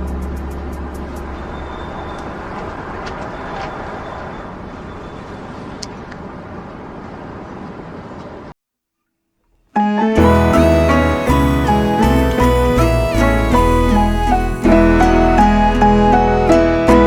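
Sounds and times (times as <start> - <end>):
traffic noise: 0.0 - 8.5
low hum: 10.2 - 17.0.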